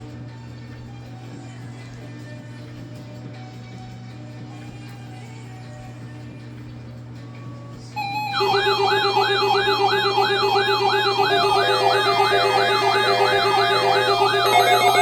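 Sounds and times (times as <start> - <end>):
electronic siren-like wailing tone: 8.0 - 15.0
steady held tones: 8.0 - 15.0.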